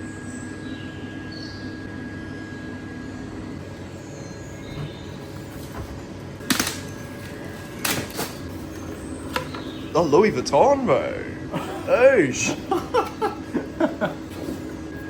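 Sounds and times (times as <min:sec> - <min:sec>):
steady background hum: 0:00.0 - 0:15.0.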